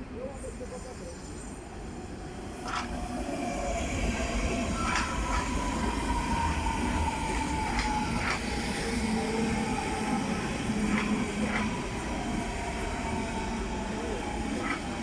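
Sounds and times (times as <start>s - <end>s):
train rumbling along track: 0.0s - 15.0s
train wheels clacking: 7.5s - 8.9s, 10.7s - 11.8s, 14.6s - 15.0s.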